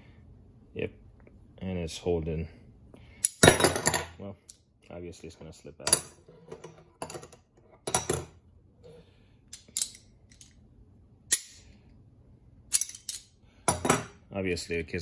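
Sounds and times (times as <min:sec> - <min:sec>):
metal tools clicking together: 0:09.5 - 0:10.6, 0:12.7 - 0:13.3.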